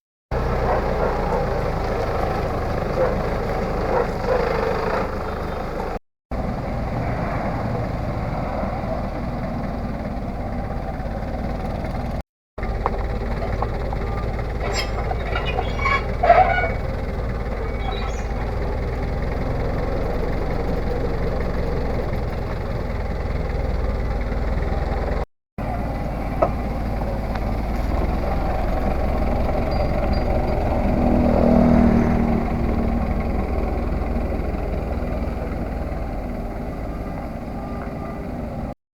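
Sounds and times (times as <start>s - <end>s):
tractor engine running: 0.3s - 38.8s.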